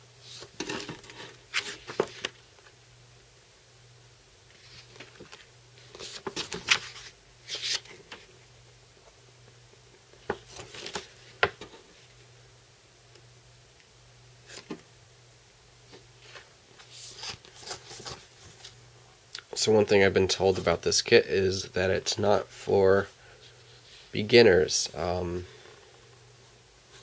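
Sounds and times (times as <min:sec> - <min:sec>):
paper pages rustling and flapping: 0:00.3 - 0:02.4, 0:04.6 - 0:08.3, 0:10.3 - 0:11.7, 0:16.2 - 0:18.8.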